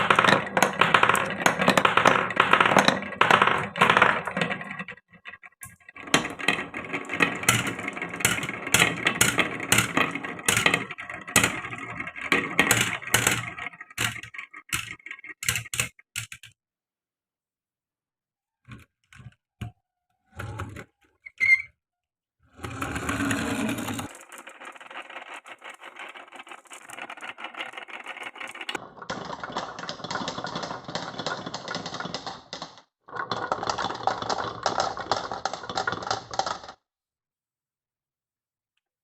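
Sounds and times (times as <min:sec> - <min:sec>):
marbles rattling on wooden run: 0:00.0 - 0:16.5, 0:22.6 - 0:36.8.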